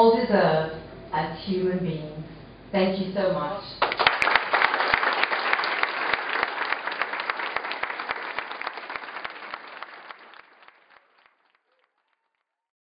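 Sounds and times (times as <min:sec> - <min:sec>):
audience applauding: 0:03.8 - 0:12.5.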